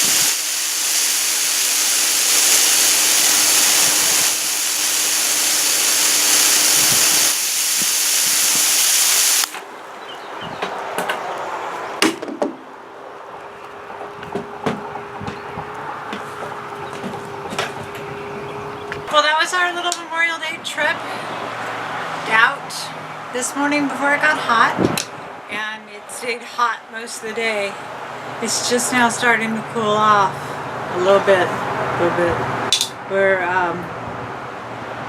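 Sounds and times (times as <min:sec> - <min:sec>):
water hissing from garden hose: 0:00.0 - 0:09.6.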